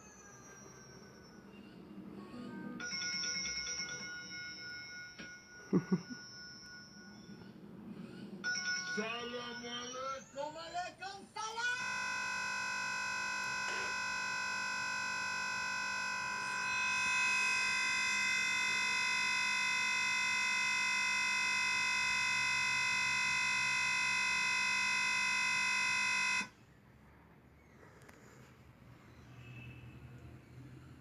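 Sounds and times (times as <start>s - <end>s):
looping electronic buzz: 11.8s - 26.5s.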